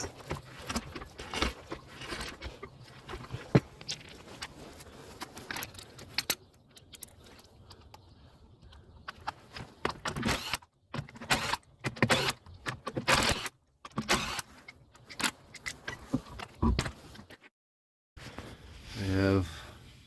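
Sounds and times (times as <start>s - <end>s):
rustling handling noise: 0.0s - 8.0s.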